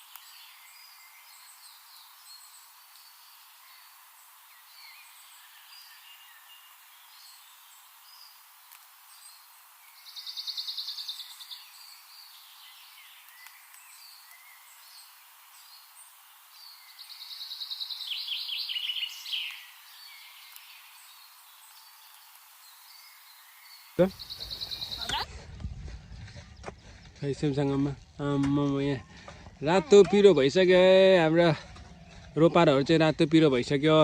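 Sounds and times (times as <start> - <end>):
small birds chirping: 0.0 - 34.0
bird trills: 21.8 - 25.2.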